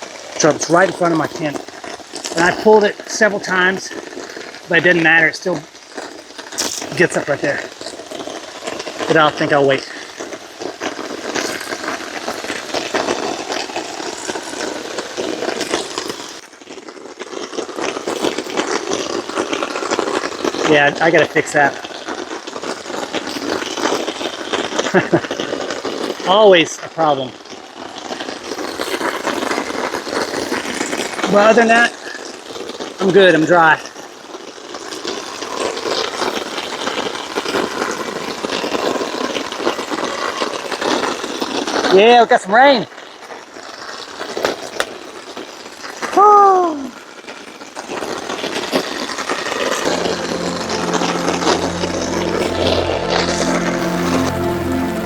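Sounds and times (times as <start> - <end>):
rain pattering: 0.0 - 55.0
heavy rain falling: 49.8 - 55.0.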